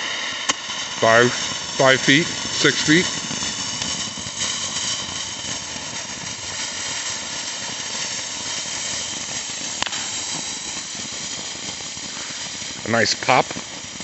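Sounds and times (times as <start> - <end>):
firework fountain hissing: 0.0 - 14.0
sharp pop: 0.4 - 0.7, 9.8 - 10.4.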